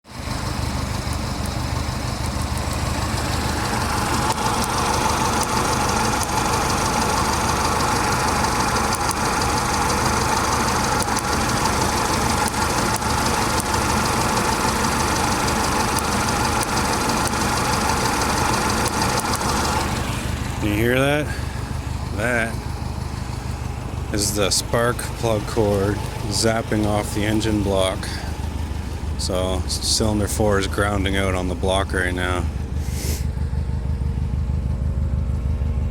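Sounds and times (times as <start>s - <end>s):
car engine idling with misfire: 0.1s - 35.9s.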